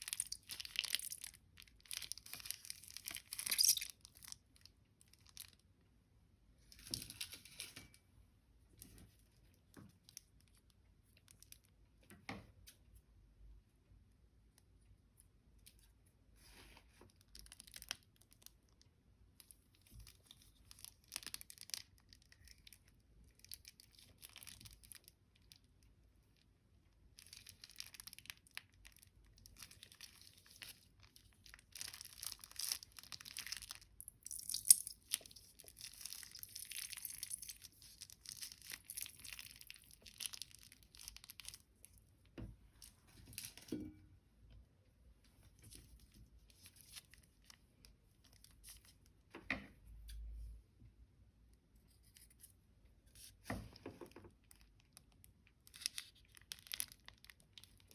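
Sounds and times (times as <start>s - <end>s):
plastic bags crinkling: 35.1s - 41.6s, 55.7s - 57.9s.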